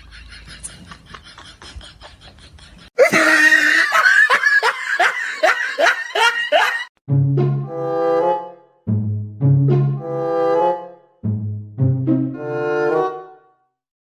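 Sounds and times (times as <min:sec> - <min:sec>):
person laughing heartily: 0:00.0 - 0:06.9.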